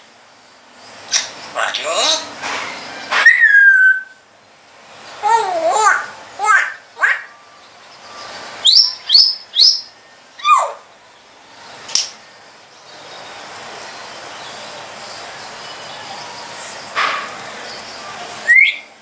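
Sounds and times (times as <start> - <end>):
parrot whistling and chirping: 3.1 - 4.2, 5.3 - 10.9, 18.4 - 19.0
background hiss: 13.2 - 18.4.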